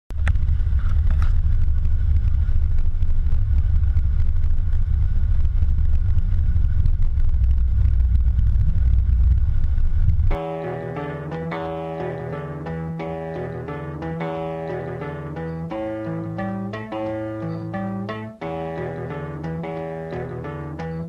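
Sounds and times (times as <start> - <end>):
car engine rumbling: 0.2 - 10.4.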